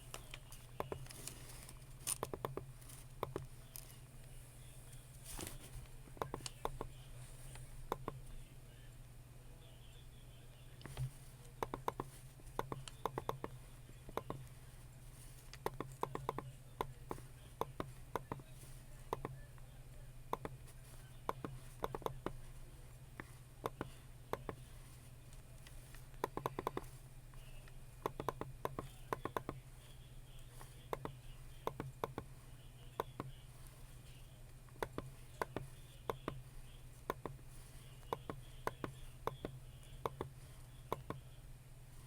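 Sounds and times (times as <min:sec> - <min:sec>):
steady low hum: 0:00.0 - 0:42.0
keyboard typing: 0:00.1 - 0:04.0, 0:10.8 - 0:14.6, 0:15.3 - 0:19.4, 0:20.3 - 0:22.4, 0:23.6 - 0:24.8, 0:25.4 - 0:41.2.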